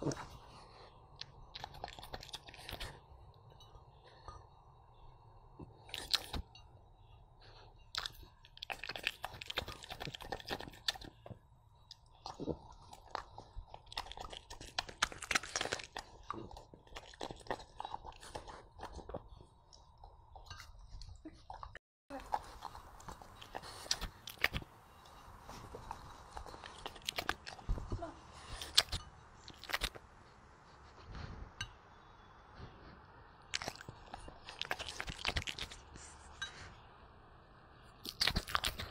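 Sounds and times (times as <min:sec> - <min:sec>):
dog chewing and crunching: 0:00.0 - 0:03.1, 0:05.6 - 0:06.6, 0:07.4 - 0:30.0, 0:33.5 - 0:36.6, 0:37.9 - 0:38.9.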